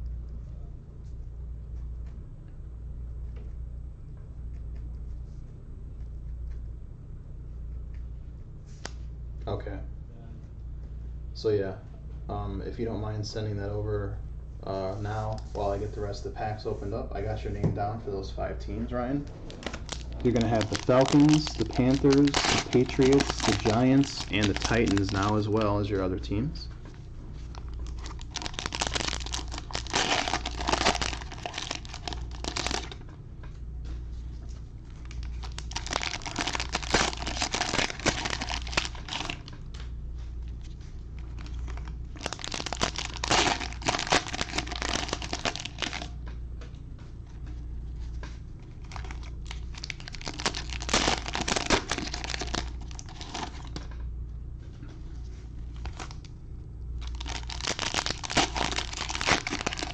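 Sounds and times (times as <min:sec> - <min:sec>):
steady low hum: 0:00.0 - 0:59.9
plastic wrappers tearing and crinkling: 0:19.4 - 0:25.9, 0:27.5 - 0:33.0, 0:34.9 - 0:39.6, 0:41.2 - 0:46.1, 0:48.8 - 0:53.8, 0:55.7 - 0:56.3, 0:57.0 - 0:59.9.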